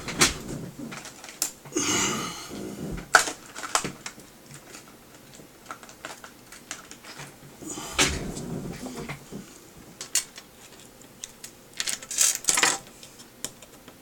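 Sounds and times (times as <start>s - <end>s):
rustling scrape: 7.6s - 9.6s
plastic parts clicking: 10.0s - 13.8s.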